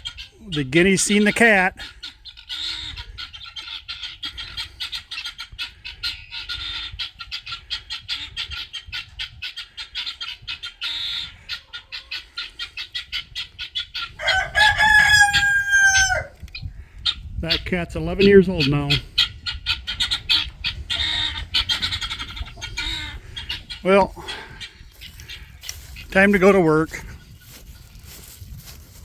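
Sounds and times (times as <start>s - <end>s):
guinea fowl alarm chatter: 0.0s - 28.4s
rooster crowing: 14.2s - 16.3s.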